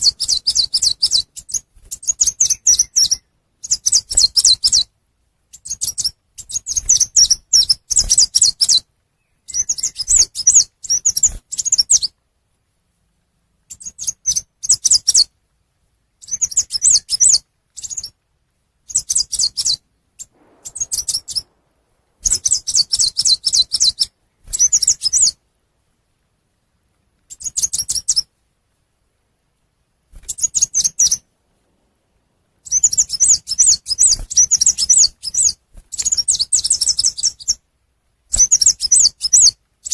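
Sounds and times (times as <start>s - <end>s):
small songbird chirping: 0.0s - 4.9s, 5.5s - 12.2s, 13.7s - 15.4s, 16.2s - 18.2s, 18.8s - 25.4s, 27.2s - 28.3s, 30.2s - 31.3s, 32.6s - 37.7s, 38.3s - 39.9s.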